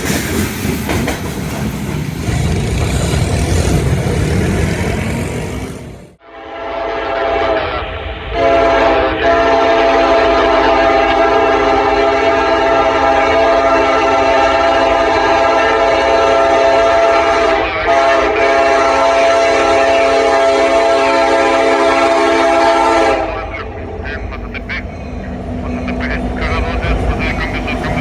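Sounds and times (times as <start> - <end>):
passing train rumble: 0.0 - 28.0
locomotive air horn: 6.2 - 23.5.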